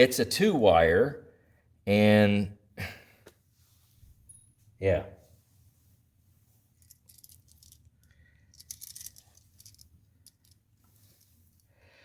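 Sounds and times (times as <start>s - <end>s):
small clicks and metallic rattles: 6.8s - 11.7s.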